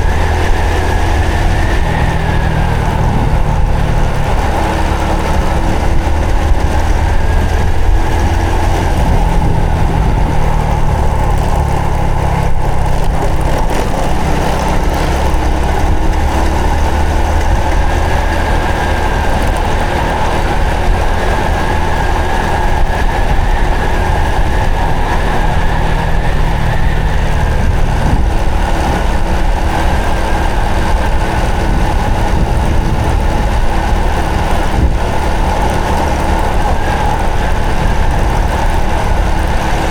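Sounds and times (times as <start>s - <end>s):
low rumble of riding noise: 0.0s - 39.9s
motorcycle engine running: 0.0s - 39.9s.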